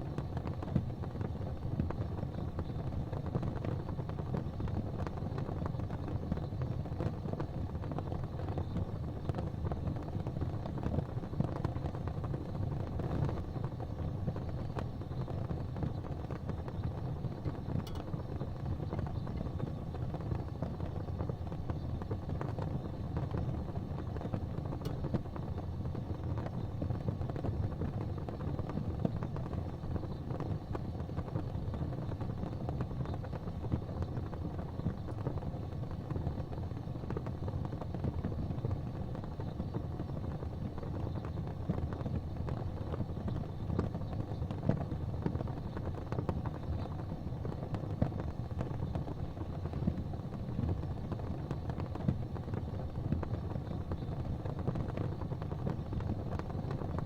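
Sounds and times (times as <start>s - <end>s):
gas fireplace flames rumbling: 0.0s - 57.0s
faint small ticks: 17.7s - 18.2s.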